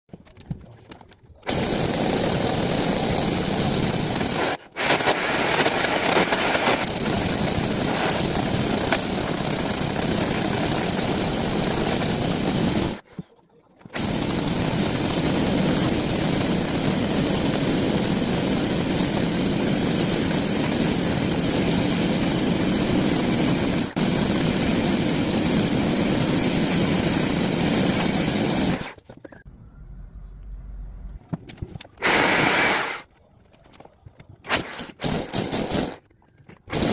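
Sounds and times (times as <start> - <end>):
electric drill whining: 1.5 - 13.0, 14.0 - 29.0, 32.0 - 33.1, 34.5 - 36.0.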